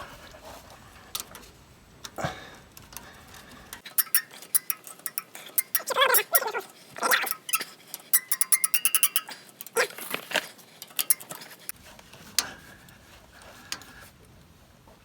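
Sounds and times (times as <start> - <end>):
ratchet wrench clicking: 3.8 - 11.7.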